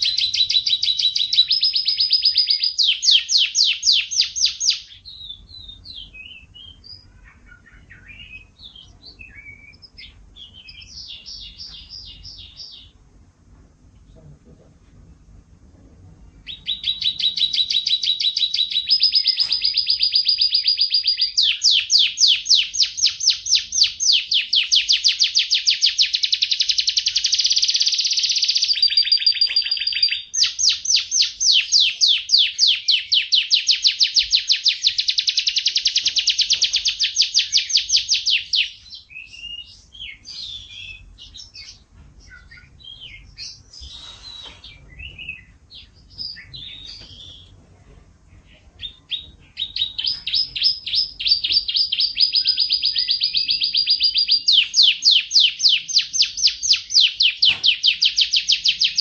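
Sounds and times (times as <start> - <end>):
canary singing trills: 0.0 - 13.1, 16.2 - 47.6, 48.4 - 59.0
canary short chirps: 16.4 - 47.5.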